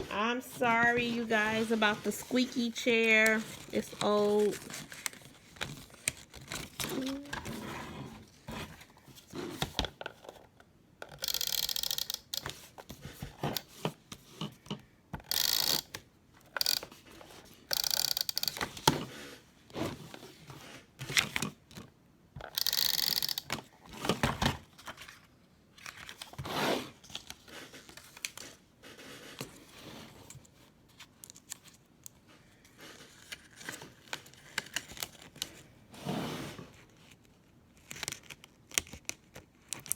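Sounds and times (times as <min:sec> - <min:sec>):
paper crinkling and tapping: 0:00.6 - 0:07.5, 0:32.9 - 0:35.6, 0:37.1 - 0:39.9.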